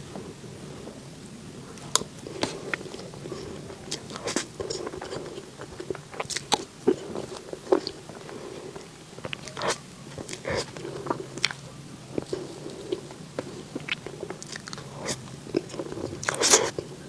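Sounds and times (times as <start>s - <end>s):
crunchy snaps: 0.0s - 17.0s
person chewing food: 0.0s - 17.0s.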